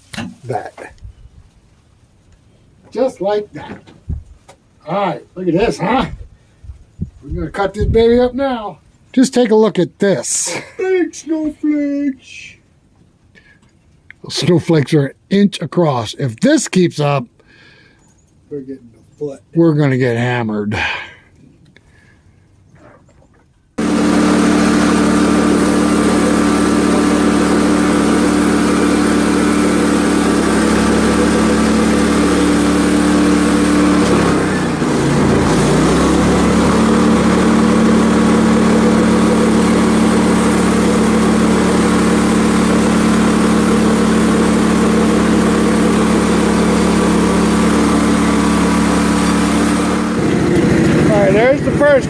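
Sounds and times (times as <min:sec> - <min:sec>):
sawmill engine running: 0:23.8 - 0:52.0.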